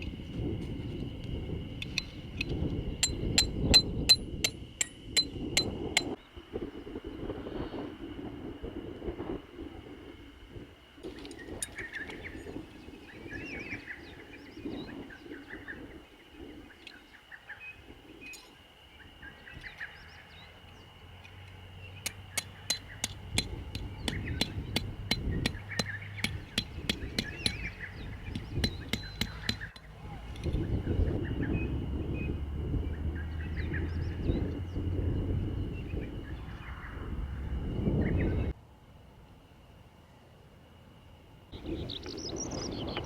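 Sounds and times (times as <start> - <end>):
steady high drone: 0.0 - 38.6
birds chirping: 11.2 - 38.5, 41.6 - 43.0
low rumbling: 20.0 - 38.6.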